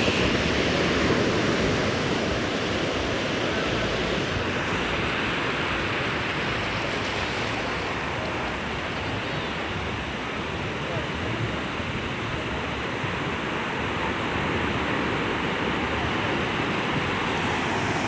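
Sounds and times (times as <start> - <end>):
ocean waves breaking on beach: 0.0 - 18.0.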